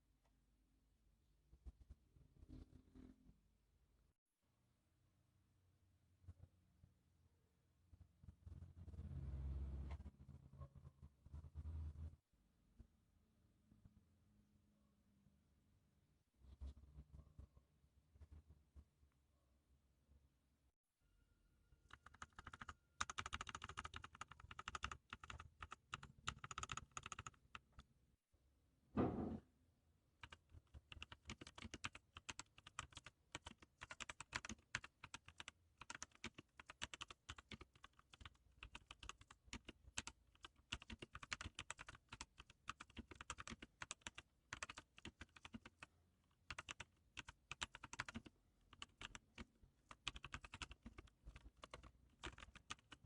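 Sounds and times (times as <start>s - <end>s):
keyboard typing clicks: 21.9s - 27.8s, 30.2s - 45.9s, 46.5s - 53.0s
loud dull thump: 29.0s - 29.4s.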